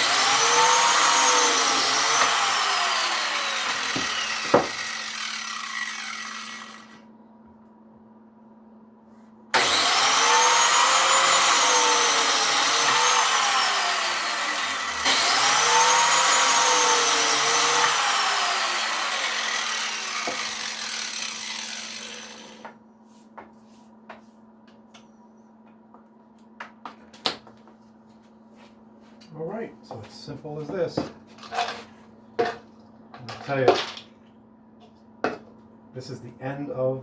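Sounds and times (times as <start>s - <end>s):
biscuit joiner motor whine: 0.0s - 7.1s, 9.6s - 22.8s.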